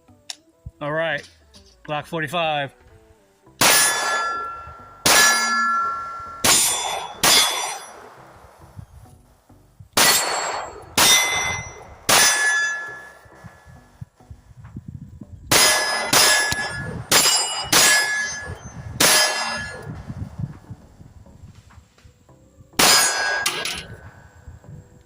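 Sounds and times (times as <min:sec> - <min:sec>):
metallic ring: 0:03.6 - 0:08.1, 0:10.0 - 0:13.7, 0:15.6 - 0:20.0, 0:22.8 - 0:24.3
pistol shots: 0:03.6 - 0:08.6, 0:10.0 - 0:13.3, 0:15.5 - 0:19.9, 0:22.8 - 0:24.1.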